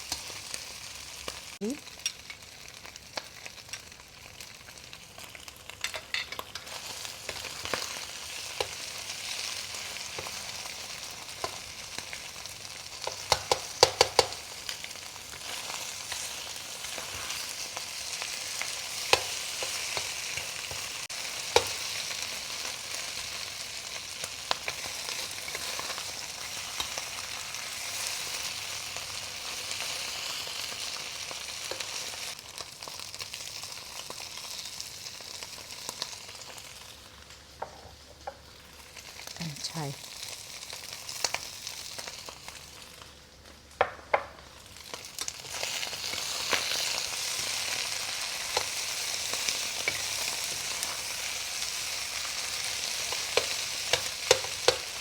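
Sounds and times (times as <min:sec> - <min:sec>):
food sizzling in hot oil: 0:00.0 - 0:55.0
spatula knocking against pan: 0:13.3 - 0:14.4.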